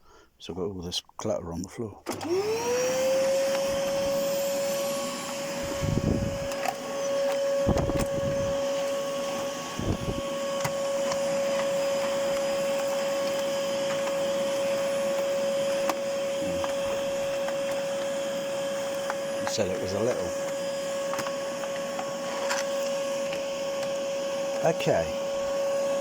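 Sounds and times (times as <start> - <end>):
vacuum cleaner running: 2.0 - 26.0.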